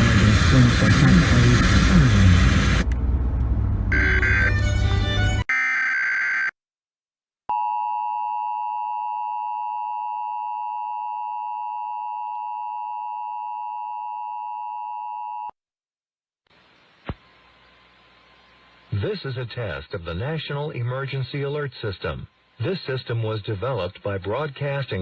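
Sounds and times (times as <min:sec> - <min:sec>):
click: 0:02.8 - 0:03.5
two-tone alert signal: 0:03.9 - 0:04.9
shrill electronic tones: 0:03.9 - 0:06.5.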